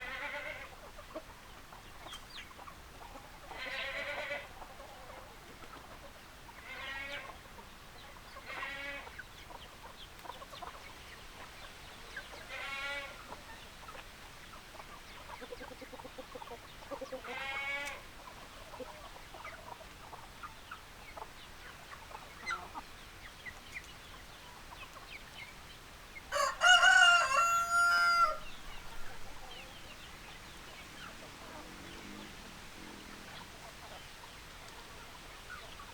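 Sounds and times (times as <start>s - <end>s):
chickens calling: 0.0s - 35.9s
rooster crowing: 26.3s - 28.5s.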